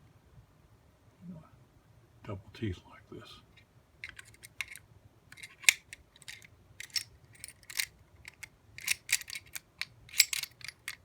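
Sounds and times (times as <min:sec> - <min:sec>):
key clicking in a lock: 0:05.4 - 0:11.0.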